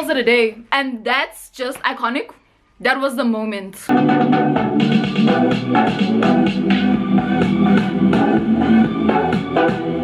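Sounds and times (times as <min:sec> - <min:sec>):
electronic dance music: 0:03.9 - 0:10.0.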